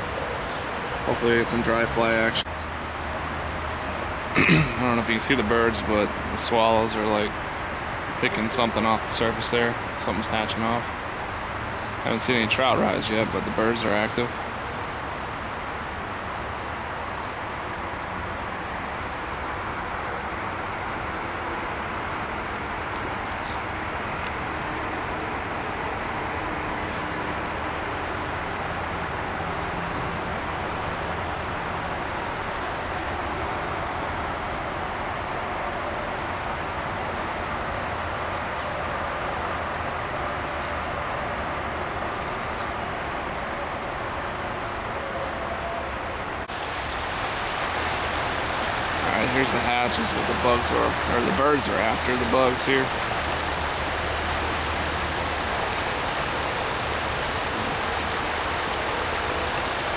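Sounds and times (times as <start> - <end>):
high insect chorus: 0.0 - 59.9
stream water rushing: 0.0 - 59.9.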